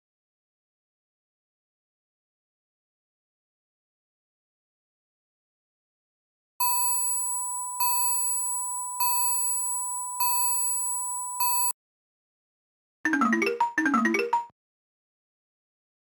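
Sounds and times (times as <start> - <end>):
phone ringtone beep: 6.6 - 11.8, 13.1 - 14.5
ringtone melody notes: 6.6 - 11.8, 13.1 - 14.5.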